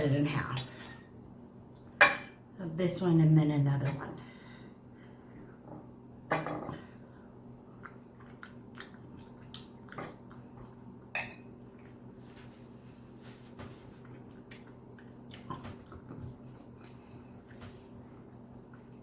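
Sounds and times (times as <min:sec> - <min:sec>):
steady low hum: 0:00.0 - 0:19.0
mouth chewing: 0:07.8 - 0:10.8, 0:14.0 - 0:19.0.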